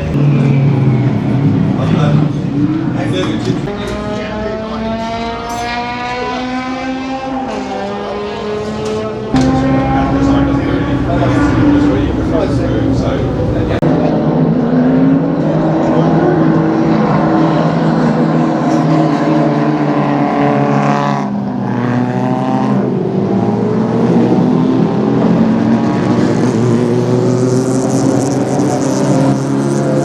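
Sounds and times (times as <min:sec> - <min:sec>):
race car engine revving: 0:00.0 - 0:13.9.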